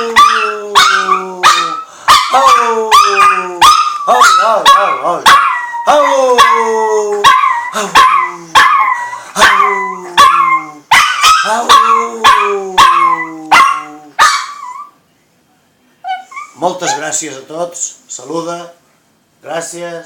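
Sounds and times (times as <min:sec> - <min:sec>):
small dog howling and yelping: 0:00.0 - 0:15.0.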